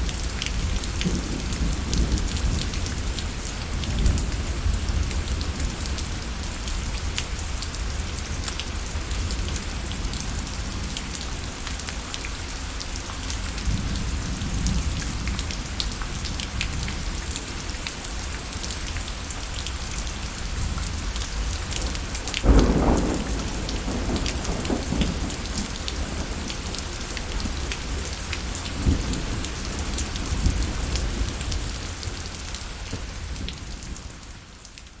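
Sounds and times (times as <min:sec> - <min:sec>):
rain drops ticking: 0:00.0 - 0:35.0
low thunder rumble: 0:21.8 - 0:31.6.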